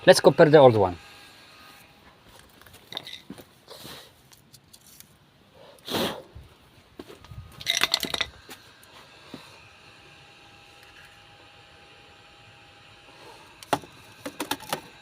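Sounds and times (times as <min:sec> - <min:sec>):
clattering rattle: 0:02.8 - 0:03.3, 0:07.6 - 0:08.4.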